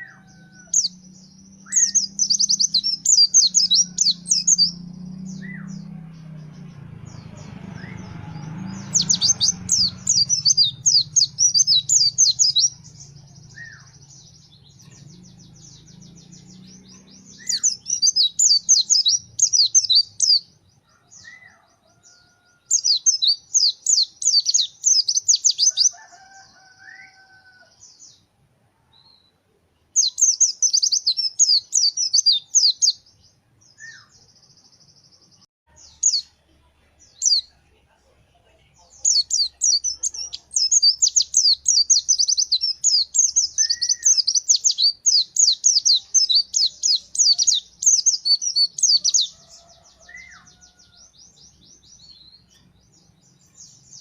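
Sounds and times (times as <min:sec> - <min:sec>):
bird fast high twittering: 0:01.6 - 0:05.8, 0:39.1 - 0:49.3.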